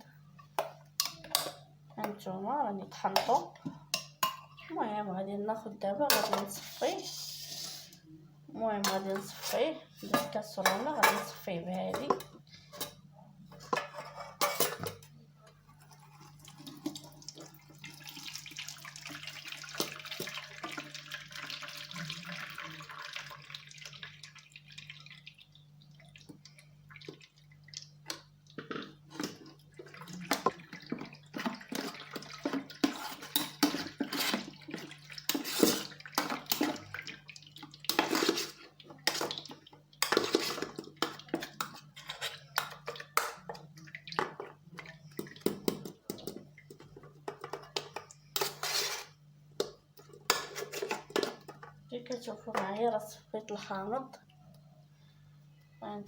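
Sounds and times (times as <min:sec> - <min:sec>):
spoon scraping strainer: 0:06.1 - 0:08.0, 0:31.7 - 0:34.5, 0:35.2 - 0:36.8, 0:37.9 - 0:39.3, 0:48.4 - 0:49.2
juice pouring through strainer: 0:15.9 - 0:27.8.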